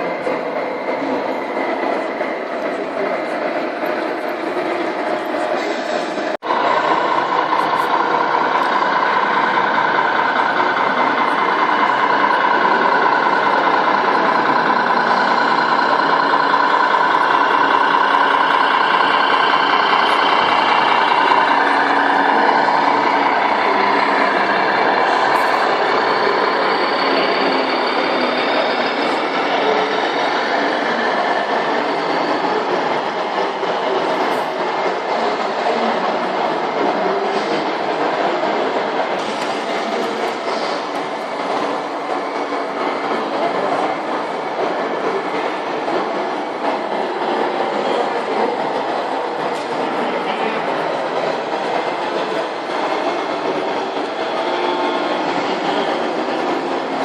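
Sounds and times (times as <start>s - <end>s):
truck engine sound: 0.0s - 54.4s.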